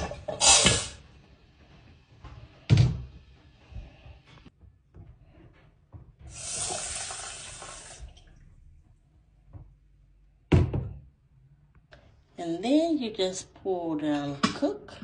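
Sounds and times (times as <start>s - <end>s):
water running from kitchen tap: 6.3s - 8.5s.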